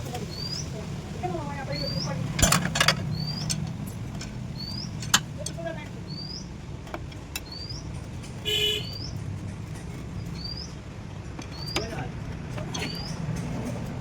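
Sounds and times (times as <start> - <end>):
bird rising chirp: 0.2 - 0.8, 3.0 - 3.7, 4.5 - 5.1, 6.0 - 6.5, 7.4 - 7.9.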